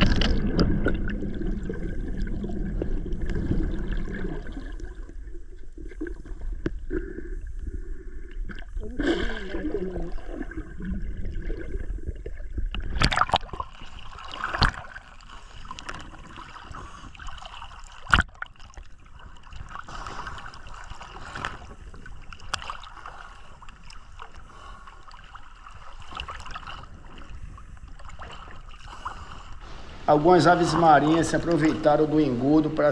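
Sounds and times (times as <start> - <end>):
water sloshing around a boat: 8.8 - 32.9.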